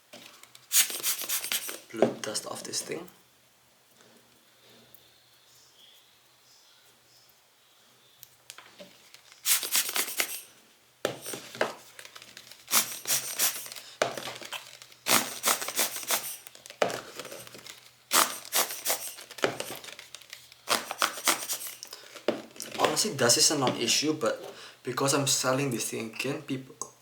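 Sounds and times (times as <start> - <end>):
hand air blower puffs: 0.7 - 1.9, 9.4 - 10.5, 12.7 - 16.5, 18.1 - 19.8, 20.7 - 21.9.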